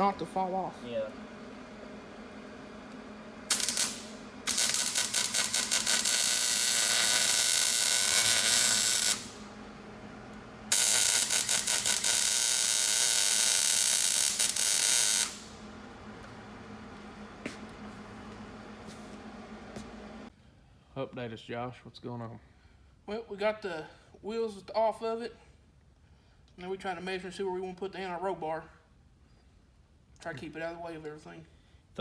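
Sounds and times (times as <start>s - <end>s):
welding arc crackling and buzzing: 2.3s - 20.3s.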